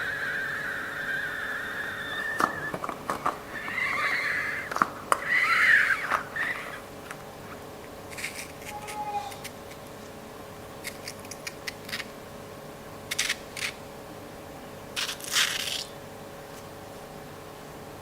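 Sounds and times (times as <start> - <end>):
balloon squealing as air escapes: 0.0 - 6.8.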